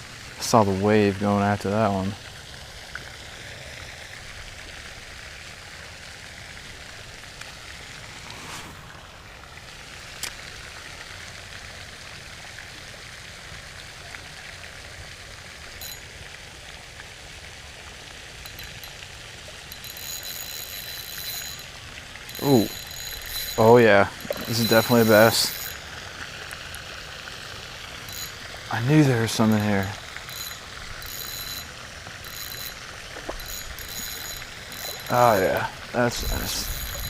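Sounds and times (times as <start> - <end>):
steady outdoor hiss: 0.0 - 37.0
faint ticks: 18.4 - 19.0, 19.7 - 21.7, 22.3 - 28.5, 29.3 - 37.0.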